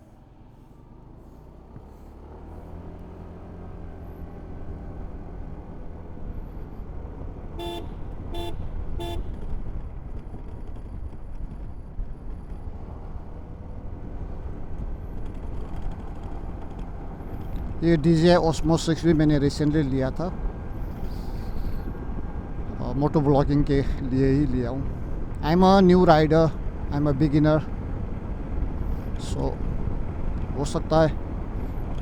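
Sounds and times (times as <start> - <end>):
motorcycle engine and road rumble: 0.0 - 32.0
motorcycle horn toots: 7.5 - 9.5.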